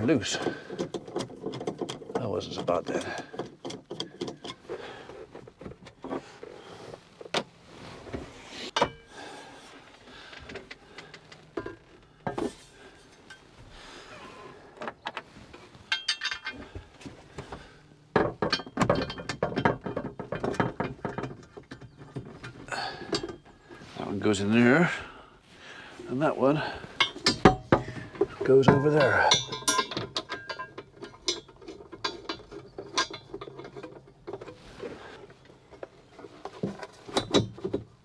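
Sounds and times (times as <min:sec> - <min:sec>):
spanner clinking on bolts: 0:00.0 - 0:04.8, 0:15.8 - 0:23.8, 0:26.6 - 0:34.7
metal clattering: 0:14.9 - 0:24.9, 0:26.2 - 0:37.6.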